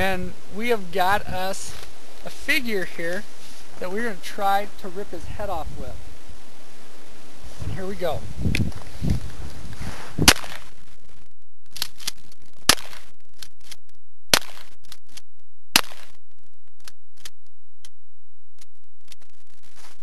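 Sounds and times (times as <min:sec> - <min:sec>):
loud gunshots: 0:10.2 - 0:10.7, 0:14.3 - 0:14.7, 0:15.8 - 0:16.1
fainter cracks: 0:11.7 - 0:13.8.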